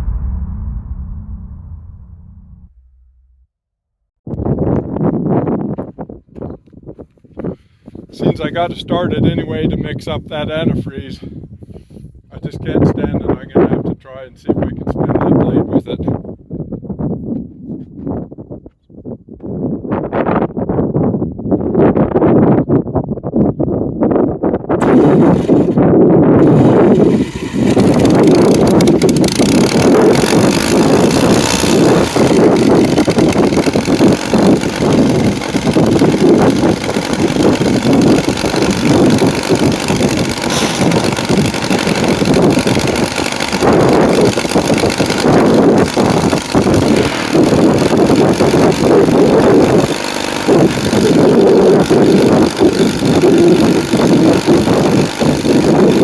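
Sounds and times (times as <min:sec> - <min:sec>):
sawmill engine running: 0:24.8 - 0:25.8, 0:26.4 - 0:56.0.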